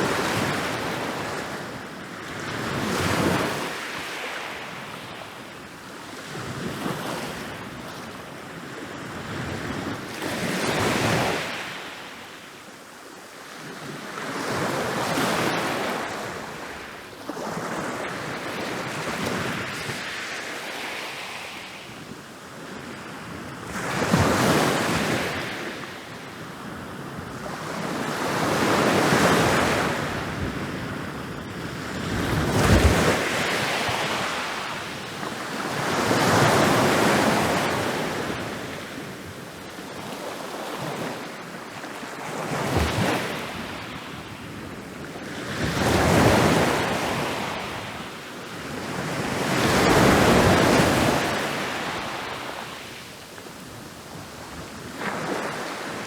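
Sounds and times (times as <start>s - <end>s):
ocean waves breaking on beach: 13.6s - 56.0s.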